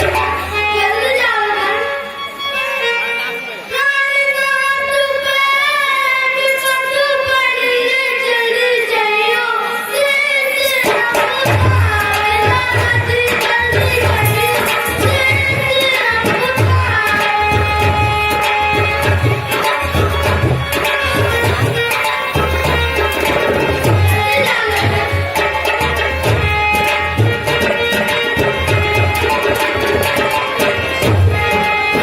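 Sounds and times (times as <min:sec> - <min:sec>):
hand drum rhythm: 0:10.8 - 0:32.0.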